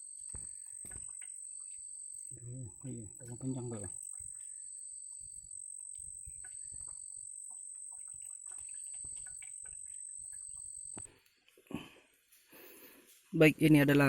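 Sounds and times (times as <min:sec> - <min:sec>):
high-pitched insect drone: 0:00.0 - 0:11.1.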